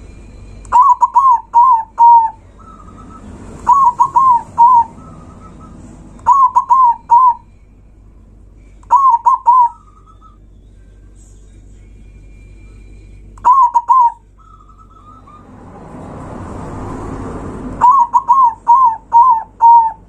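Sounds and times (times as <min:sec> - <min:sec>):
dove cooing: 0:00.7 - 0:07.4, 0:08.9 - 0:10.2, 0:13.4 - 0:15.4, 0:17.8 - 0:20.0.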